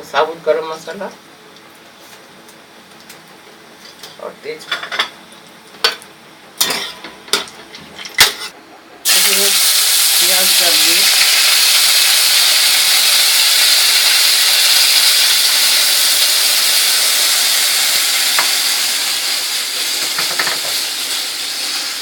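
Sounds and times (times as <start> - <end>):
paste sizzling in hot oil: 9.0 - 22.0.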